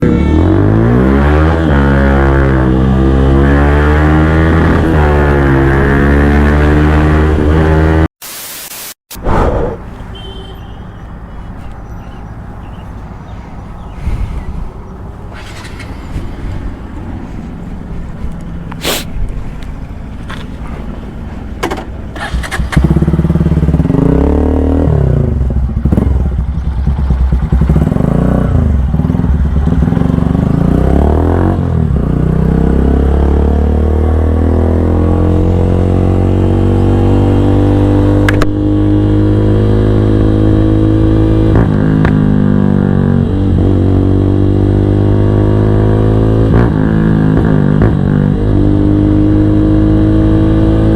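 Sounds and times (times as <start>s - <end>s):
motorcycle engine revving: 0.0s - 8.1s, 22.1s - 50.9s
loud tone: 8.2s - 11.1s.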